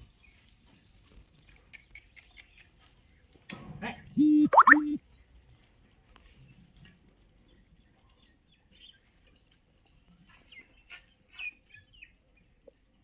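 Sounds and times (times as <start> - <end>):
small birds chirping: 7.3 - 13.0.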